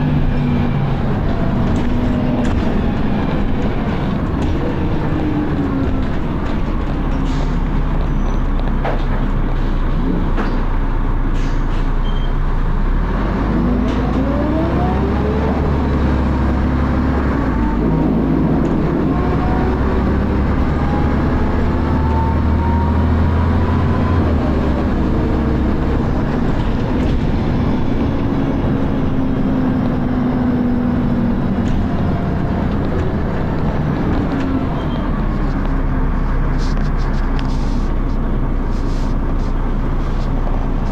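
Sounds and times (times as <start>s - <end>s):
bus engine running under load: 0.0s - 40.9s.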